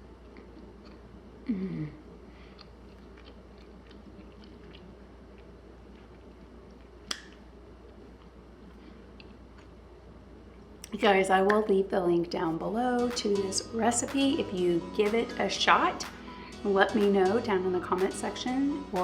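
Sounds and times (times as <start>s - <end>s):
person chewing bread: 0.2s - 1.2s, 2.3s - 10.0s
person humming mmm: 1.4s - 2.1s.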